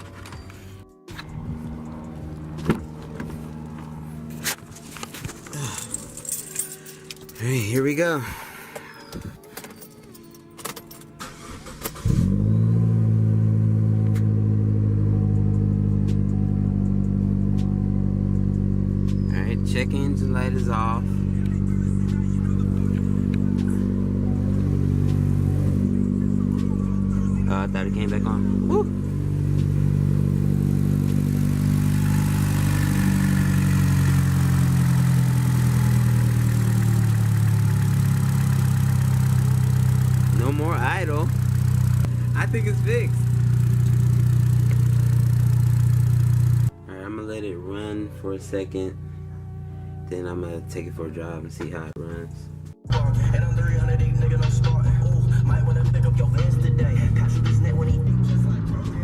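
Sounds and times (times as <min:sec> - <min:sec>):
car engine starting: 0:00.0 - 0:08.3, 0:09.8 - 0:46.7, 0:52.5 - 0:59.0
car engine idling: 0:01.1 - 0:07.7, 0:11.3 - 0:46.7.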